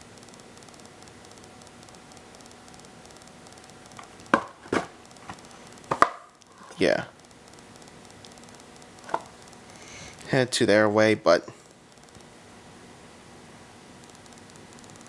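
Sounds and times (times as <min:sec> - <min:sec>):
sharp clicks and knocks: 0:00.1 - 0:06.5, 0:07.5 - 0:09.6
faint hiss: 0:05.4 - 0:15.0.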